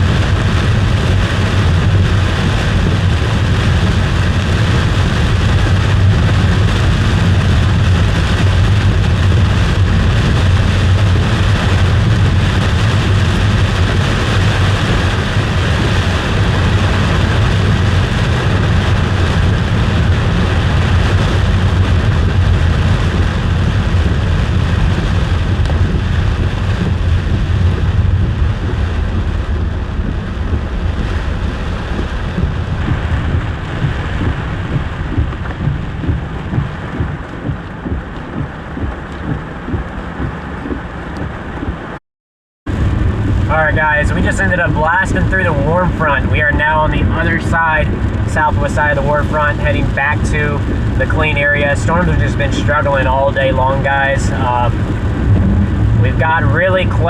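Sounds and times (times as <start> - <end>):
rain on a car: 0.0 - 42.0, 42.7 - 57.0
road and engine noise: 0.0 - 42.0, 42.7 - 57.0.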